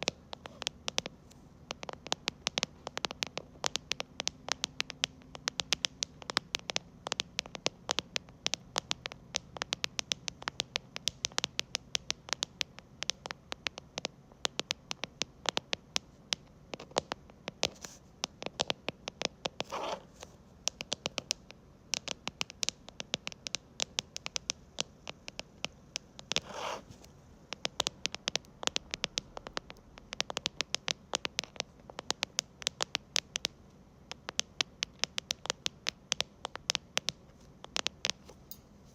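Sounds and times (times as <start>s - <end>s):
fingers tapping keyboard keys: 0.0s - 20.0s, 20.7s - 38.6s
brief scratching rubs: 26.4s - 27.1s.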